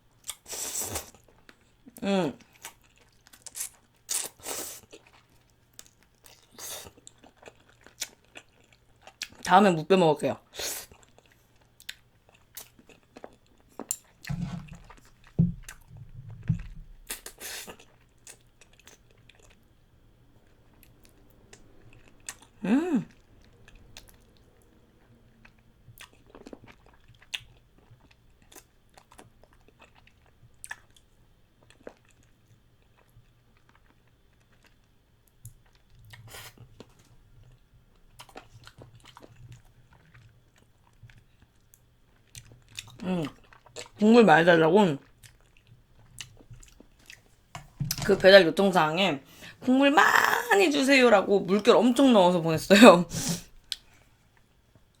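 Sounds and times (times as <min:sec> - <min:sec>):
chewing with crunches: 0:02.4 - 0:09.5, 0:10.8 - 0:19.8, 0:20.4 - 0:44.0, 0:45.0 - 0:48.0.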